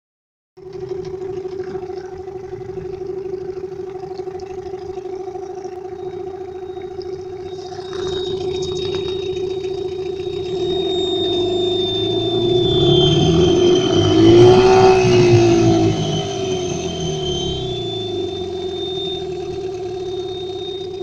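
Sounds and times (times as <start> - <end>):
outboard motor running: 0.6 - 21.0
steady whistle: 5.6 - 21.0
thin high whistle: 6.0 - 21.0.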